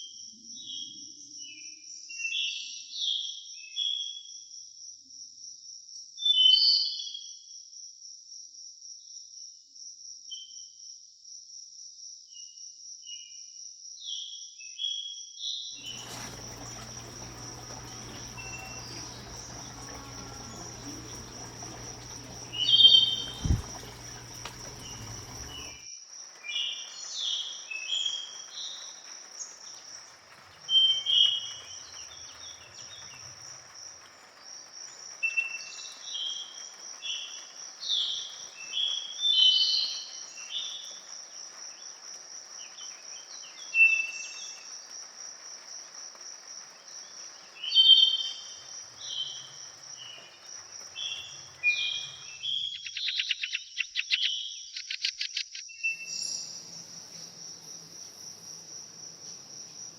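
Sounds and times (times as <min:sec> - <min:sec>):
forest birds singing: 0:15.8 - 0:25.8, 0:26.4 - 0:44.9, 0:46.7 - 0:59.9
high-pitched insect trill: 0:15.8 - 0:27.0.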